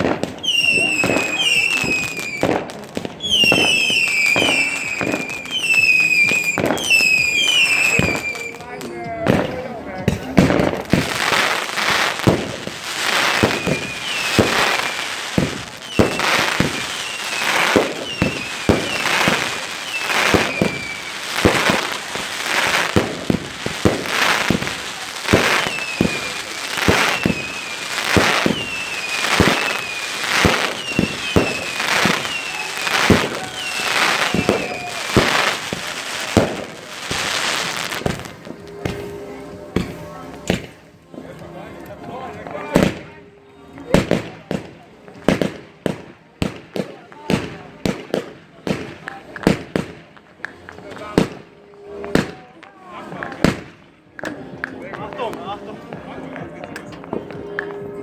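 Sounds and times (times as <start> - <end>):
firework whistles: 0.0 - 8.7, 10.1 - 40.8
firework bangs and crackles: 0.0 - 58.0.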